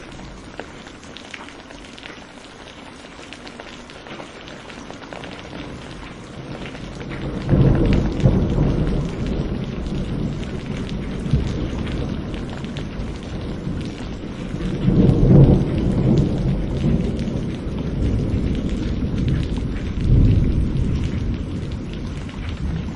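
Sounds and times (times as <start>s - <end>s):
rain falling: 0.0s - 22.9s
thunder rumbling: 4.7s - 22.9s.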